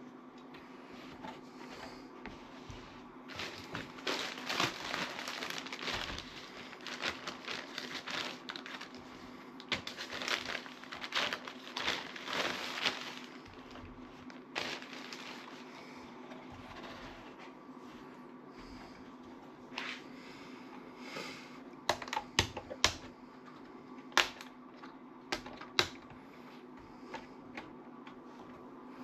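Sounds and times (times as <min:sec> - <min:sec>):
plastic packaging crinkling: 0:03.3 - 0:15.7.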